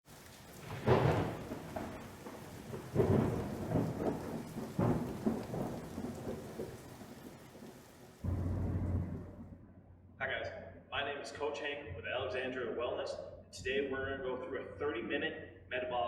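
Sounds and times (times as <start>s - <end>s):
steady rain: 0.0s - 9.6s
thunder rolling: 0.1s - 9.9s.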